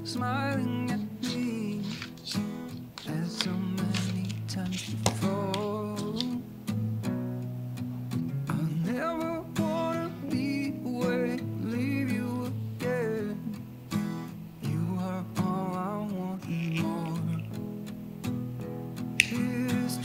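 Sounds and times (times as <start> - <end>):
person singing: 0.0 - 6.4, 8.5 - 13.6, 14.6 - 17.5, 19.2 - 20.0
strummed acoustic guitar: 0.0 - 20.0.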